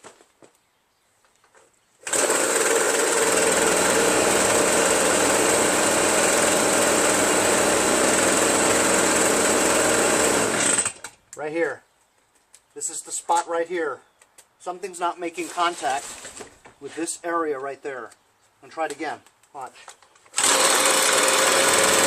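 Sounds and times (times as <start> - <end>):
leaf blower engine running: 2.0 - 11.0, 20.4 - 22.0.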